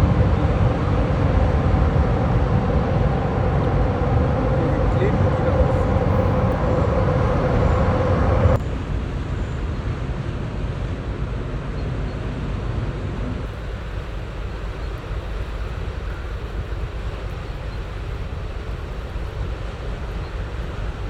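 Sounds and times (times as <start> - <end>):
humming tone: 0.0 - 8.6
steady low rumble: 0.0 - 21.0.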